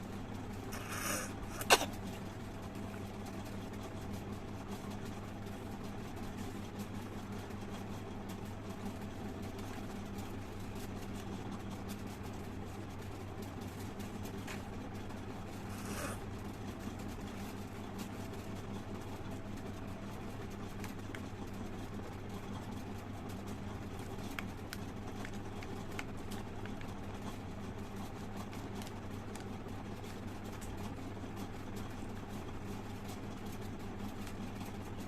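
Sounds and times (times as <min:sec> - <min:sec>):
steady low hum: 0:00.0 - 0:35.0
short hissing spit: 0:00.8 - 0:01.9, 0:15.7 - 0:16.2.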